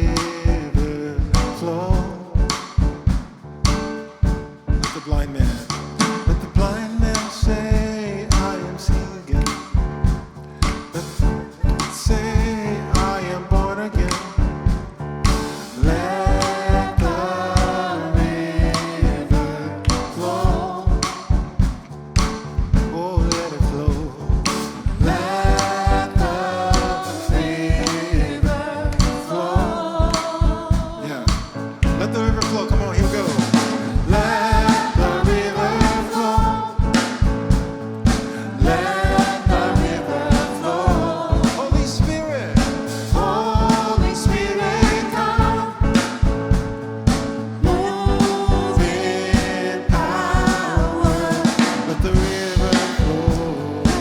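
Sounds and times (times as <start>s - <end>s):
voices singing: 0.0s - 4.0s, 10.6s - 54.0s
drum kit steady beat: 0.0s - 54.0s
gospel band playing: 0.0s - 54.0s.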